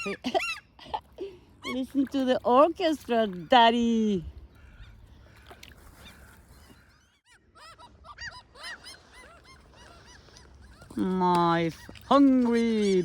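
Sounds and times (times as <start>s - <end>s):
faint chorus of birds calling: 4.5s - 11.0s.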